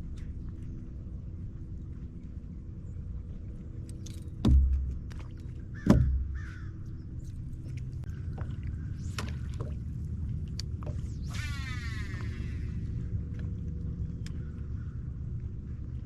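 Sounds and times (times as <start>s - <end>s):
steady low hum: 0.0s - 16.0s
heavy thumps on boat: 4.4s - 6.8s.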